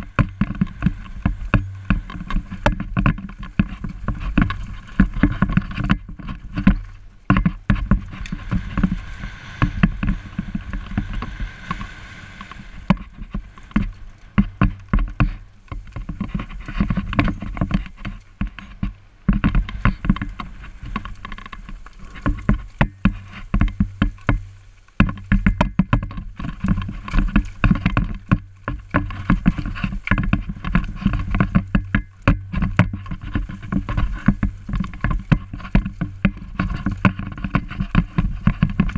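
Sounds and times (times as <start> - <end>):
mountain bike rattling on trail: 0.0 - 38.9
hiss: 8.4 - 12.9.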